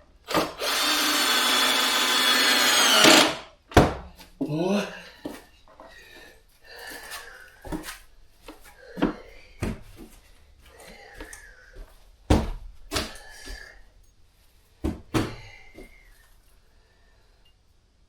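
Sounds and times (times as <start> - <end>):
wooden panels knocking and thudding: 3.7 - 4.1, 14.8 - 15.5.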